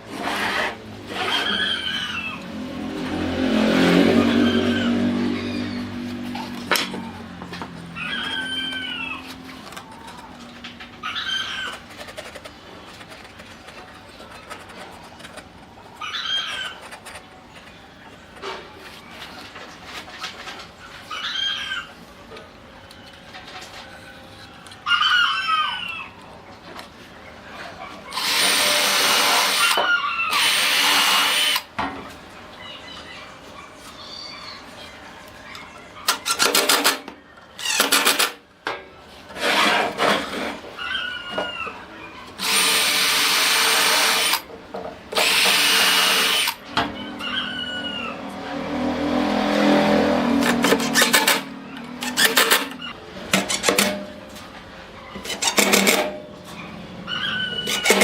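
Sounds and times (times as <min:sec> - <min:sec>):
chickens calling: 0:01.1 - 0:28.4, 0:29.5 - 0:30.8, 0:32.2 - 0:37.8, 0:40.1 - 0:42.7, 0:46.5 - 0:48.9, 0:49.6 - 0:58.0
handheld power tool whining: 0:28.1 - 0:31.7, 0:42.4 - 0:44.5, 0:45.1 - 0:46.6, 0:50.4 - 0:54.0, 0:57.6 - 0:58.0.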